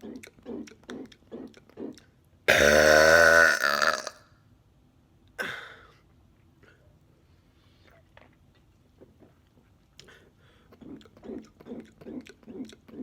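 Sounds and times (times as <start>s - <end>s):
man burping: 2.5s - 4.2s.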